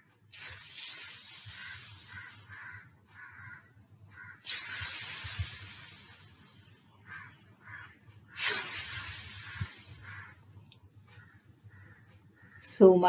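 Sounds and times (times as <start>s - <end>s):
person making breathy f hisses: 0.3s - 2.6s, 4.4s - 6.8s, 8.4s - 10.2s.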